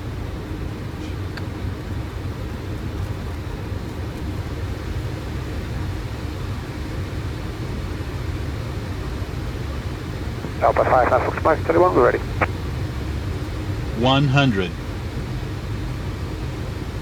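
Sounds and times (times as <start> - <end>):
engine and airflow rumble: 10.4 - 12.5.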